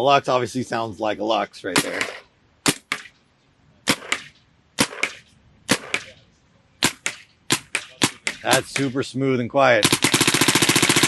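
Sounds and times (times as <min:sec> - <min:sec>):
paintball marker shots: 0:03.9 - 0:06.2, 0:06.8 - 0:09.0.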